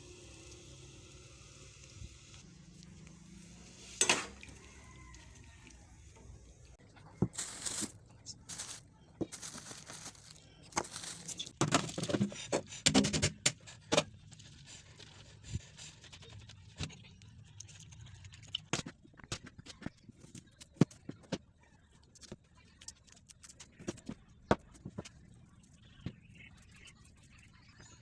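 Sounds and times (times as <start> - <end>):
scraping and rustling: 7.2 - 12.7.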